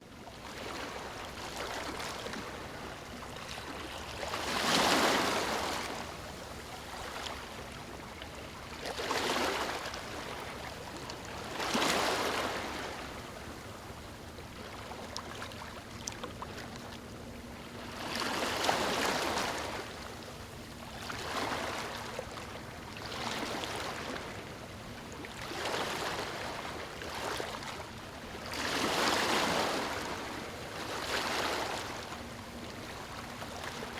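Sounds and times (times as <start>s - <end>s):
ocean waves breaking: 0.5s - 13.6s, 14.7s - 33.9s.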